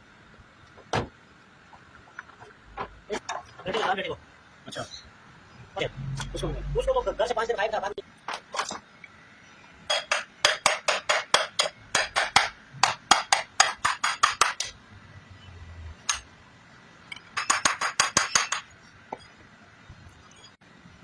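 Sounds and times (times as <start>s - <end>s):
hammer tapping on metal: 9.9s - 14.8s, 17.1s - 18.7s.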